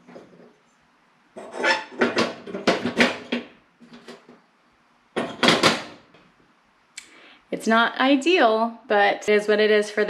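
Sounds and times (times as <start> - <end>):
kitchenware clattering: 1.4 - 4.3, 5.2 - 6.1.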